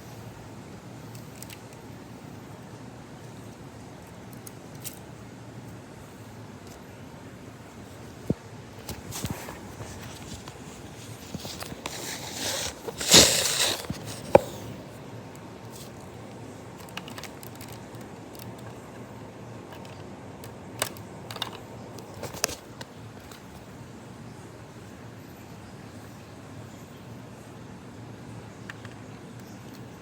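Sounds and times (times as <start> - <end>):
steady background hum: 0.0 - 30.0
plastic bricks clicking and rattling: 16.7 - 19.0, 19.7 - 22.6.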